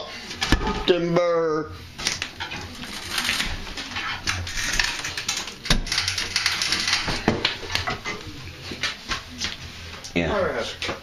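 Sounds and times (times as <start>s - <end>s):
demolition clicks scrapes and knocks: 2.5s - 8.0s.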